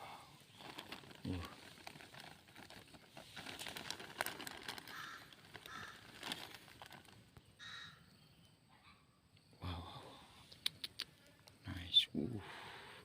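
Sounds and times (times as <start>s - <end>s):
faint rustling: 0.5s - 7.4s
harsh bird calls: 4.8s - 6.2s, 7.4s - 8.5s.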